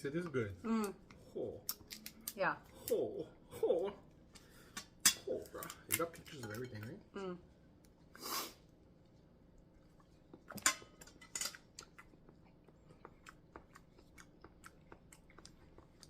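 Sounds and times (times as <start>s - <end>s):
clicking chewing sounds: 11.6s - 16.0s.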